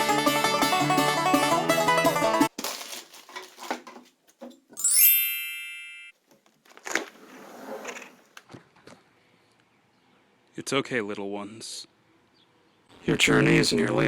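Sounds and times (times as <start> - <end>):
knocks and rustles: 2.5 - 4.8
upward sweeping chime: 4.8 - 6.1.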